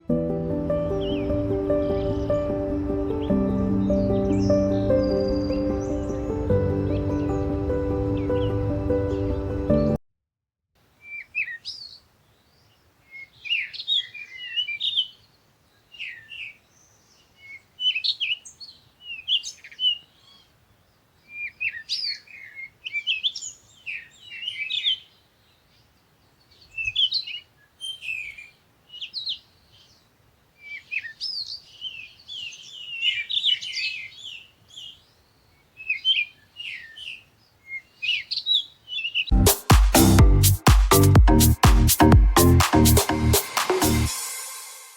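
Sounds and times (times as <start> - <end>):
music: 0.0 - 10.0, 39.3 - 44.9
birds chirping and singing: 0.7 - 10.0, 21.3 - 25.2, 25.8 - 30.0, 30.6 - 39.3.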